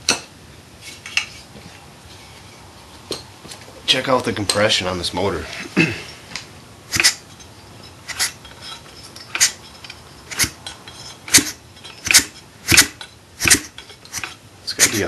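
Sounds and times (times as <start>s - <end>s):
engine compression puffs: 11.2s - 15.0s.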